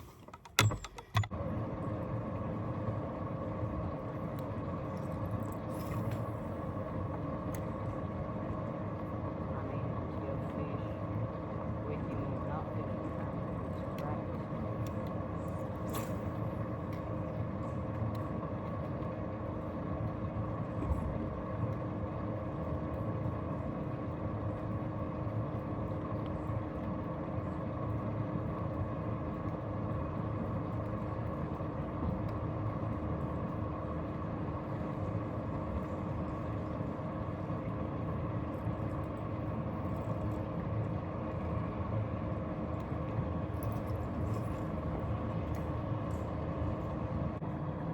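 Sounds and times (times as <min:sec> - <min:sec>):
boat motor running: 0:00.0 - 0:08.4.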